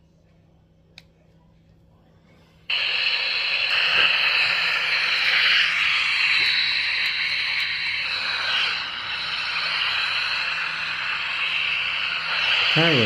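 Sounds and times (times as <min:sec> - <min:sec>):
radio static hiss: 0:02.7 - 0:13.0.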